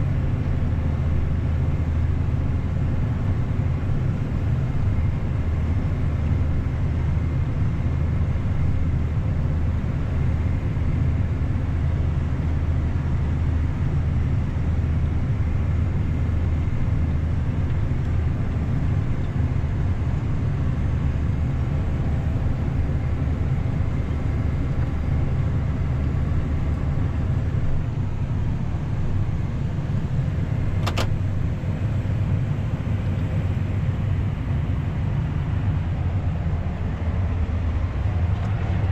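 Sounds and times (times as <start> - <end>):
combine harvester engine drone: 0.0 - 38.9
sharp click: 30.8 - 31.3.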